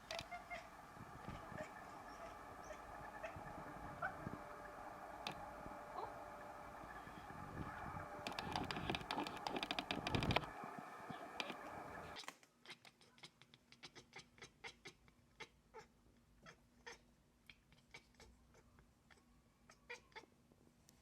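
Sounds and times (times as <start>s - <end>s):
cat chattering chirps: 0.0s - 4.6s.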